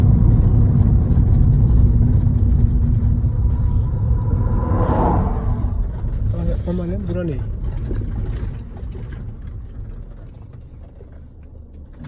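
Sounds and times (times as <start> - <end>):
engine rumbling: 0.0 - 12.0
brief rushing noise: 3.2 - 6.9.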